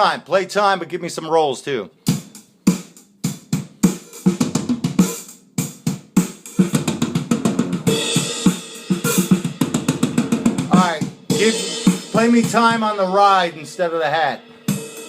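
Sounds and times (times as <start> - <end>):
drum kit beat: 2.0 - 15.0.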